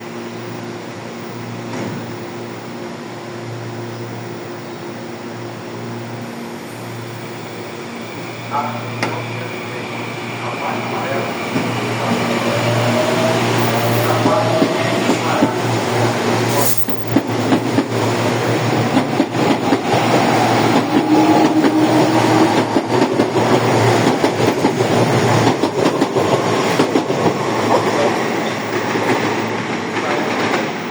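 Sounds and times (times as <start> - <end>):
electric train motors growling: 4.2 - 30.9
train rumble: 7.1 - 30.9.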